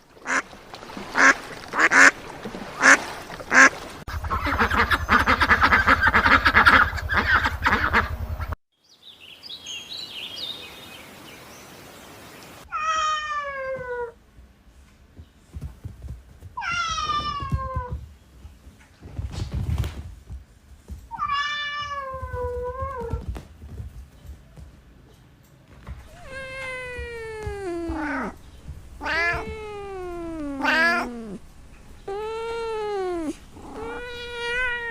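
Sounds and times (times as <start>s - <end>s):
ducks quacking: 0.2s - 0.4s, 1.1s - 8.6s
low hum: 4.1s - 8.6s, 26.0s - 34.9s
cat meowing: 26.0s - 34.9s.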